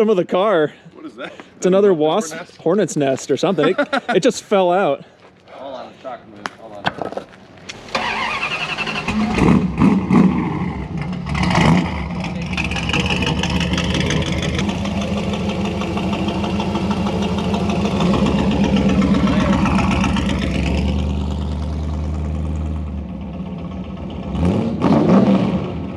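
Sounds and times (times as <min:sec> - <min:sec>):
vehicle engine running: 0:07.8 - 0:24.8.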